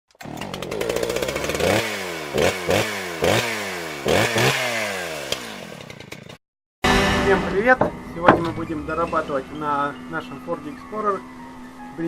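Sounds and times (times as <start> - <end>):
engine revving: 0.1 - 7.2.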